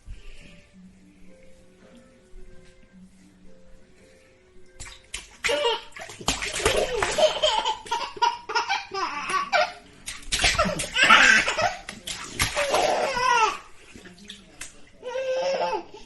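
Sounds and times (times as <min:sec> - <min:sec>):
water splashing in a bathtub: 0:04.6 - 0:16.0
baby laughing: 0:05.5 - 0:09.8, 0:10.4 - 0:11.9.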